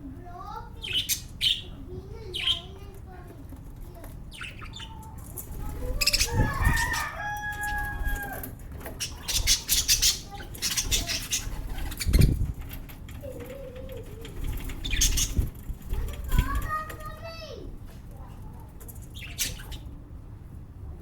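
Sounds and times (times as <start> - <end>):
lovebirds squawking and chirping: 0.8 - 2.8, 4.2 - 12.5, 14.2 - 16.6, 18.9 - 20.0.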